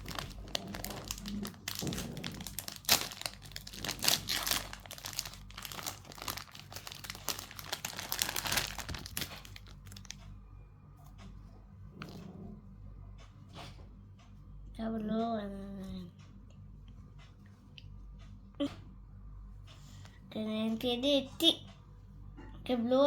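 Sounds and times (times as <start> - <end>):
packaging wrapper crinkling: 0.0 - 10.2.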